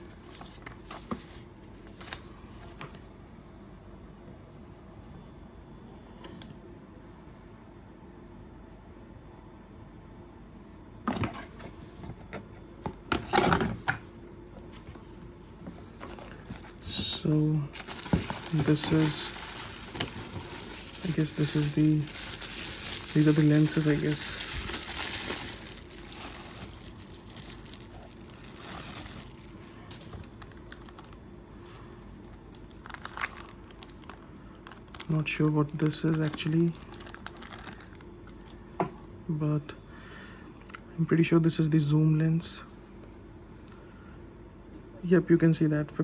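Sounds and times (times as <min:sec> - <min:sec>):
packaging rustling: 0:15.6 - 0:38.6
box contents knocking and tapping: 0:17.8 - 0:20.5.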